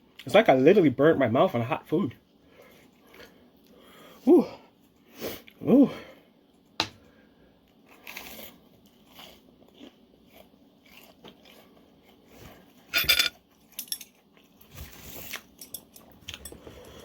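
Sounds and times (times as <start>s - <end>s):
person chewing crunchy food: 7.6s - 12.9s.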